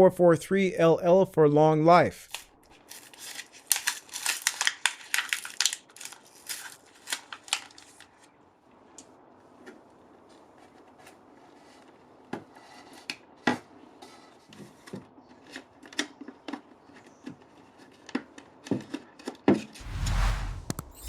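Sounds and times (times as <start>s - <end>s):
rushing rub with low thump: 19.8s - 21.0s.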